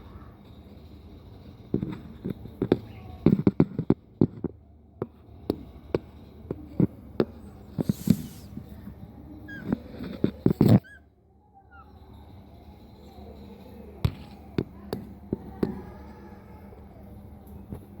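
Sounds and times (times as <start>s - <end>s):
sharp taps and knocks: 1.7s - 8.3s
short hiss: 7.8s - 8.6s.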